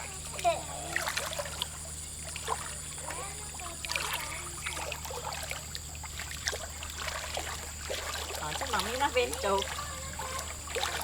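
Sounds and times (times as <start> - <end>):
faint children's voices: 0.0 - 1.5, 2.2 - 5.6, 9.2 - 11.0
stream water trickling: 0.0 - 11.0.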